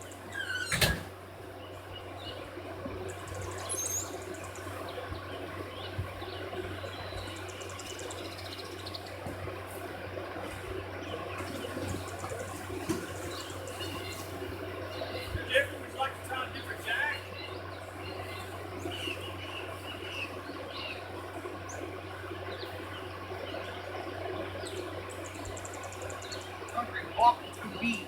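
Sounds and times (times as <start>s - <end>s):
steady low hum: 0.0s - 28.0s
faint bird chirps: 1.5s - 9.2s, 17.1s - 21.8s.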